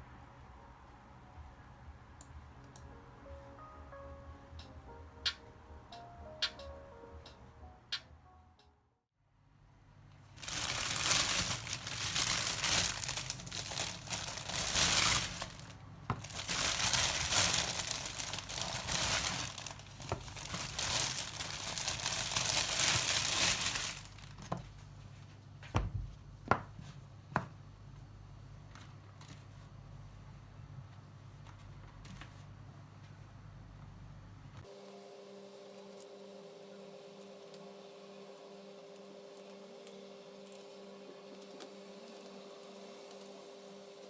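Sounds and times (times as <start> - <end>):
crinkling and rustling: 10.4 - 27.0.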